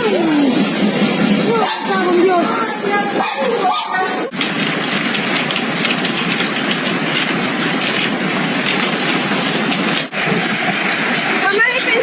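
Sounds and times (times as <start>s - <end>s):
hail pelting down: 4.3s - 12.0s
heavy falling hail or rain: 4.3s - 12.0s.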